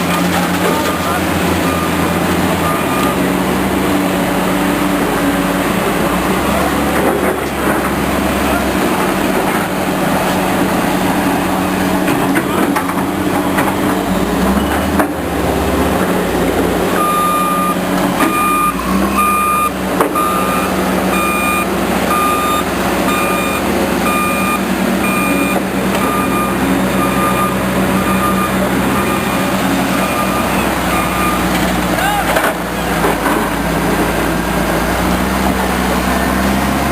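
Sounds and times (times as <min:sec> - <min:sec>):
diesel construction machine running: 0:00.0 - 0:36.9
back-up alarm beeping: 0:01.6 - 0:03.3, 0:17.0 - 0:31.5.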